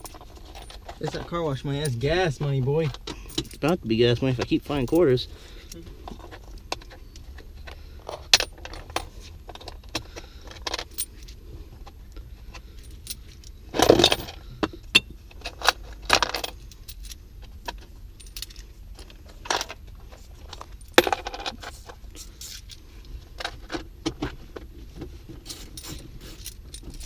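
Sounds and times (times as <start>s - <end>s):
coins rattling: 12.8s - 14.4s, 15.4s - 18.7s, 19.4s - 22.8s, 25.4s - 27.0s
coins clinking and jingling: 25.4s - 27.0s.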